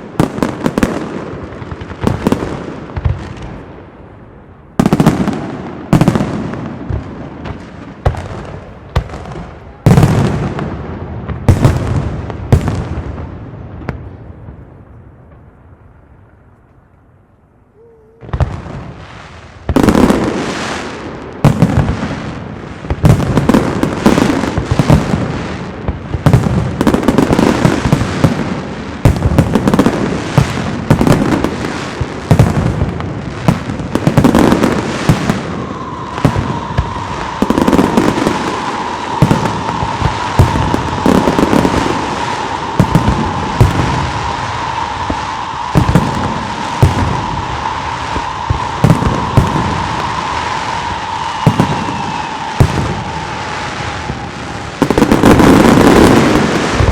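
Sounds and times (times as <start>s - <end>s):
heavy fireworks booms: 0.0s - 16.5s, 18.2s - 56.9s
fireworks bangs and crackling: 0.0s - 17.0s, 18.1s - 56.9s
steady whistling tone: 34.3s - 56.9s.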